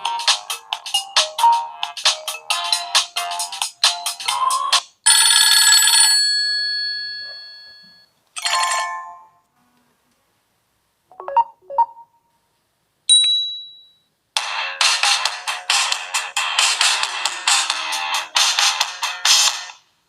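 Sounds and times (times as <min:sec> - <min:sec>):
melodic ringtone: 0:00.0 - 0:06.6, 0:07.2 - 0:09.4, 0:11.1 - 0:12.2.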